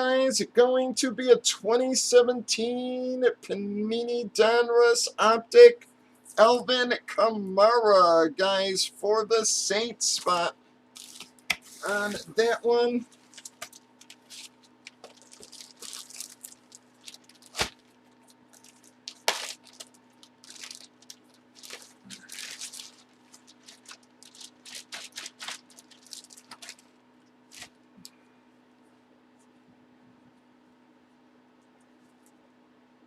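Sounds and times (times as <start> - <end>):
cards rustling and scraping: 11.0 - 12.4, 13.0 - 26.9, 27.5 - 27.7.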